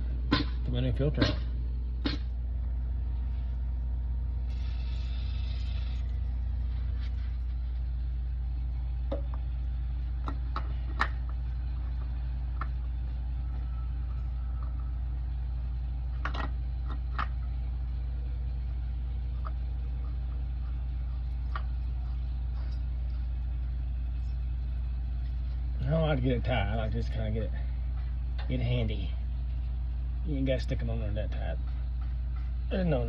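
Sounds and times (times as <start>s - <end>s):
low machine hum: 0.0s - 33.0s.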